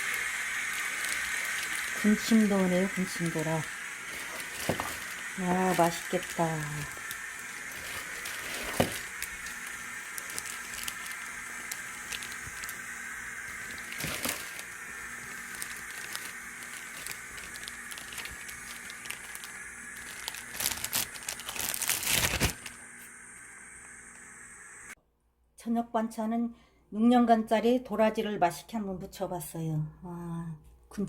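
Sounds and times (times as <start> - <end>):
crackling handling noises: 0.0 - 23.1
steady hiss: 0.0 - 25.0.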